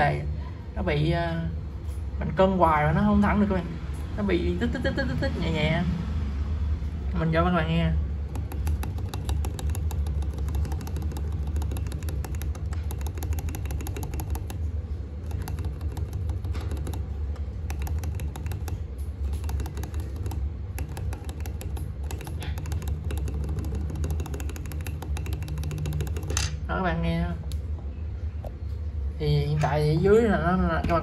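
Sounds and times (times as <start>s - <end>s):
steady low hum: 0.0s - 31.0s
mechanical keyboard typing: 8.2s - 26.6s
spacebar ticking: 8.2s - 26.6s.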